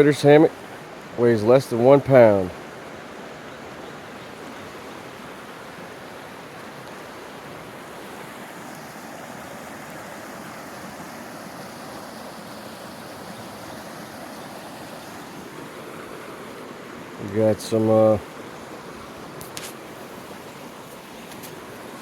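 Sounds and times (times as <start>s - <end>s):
creek water running: 0.0s - 22.0s.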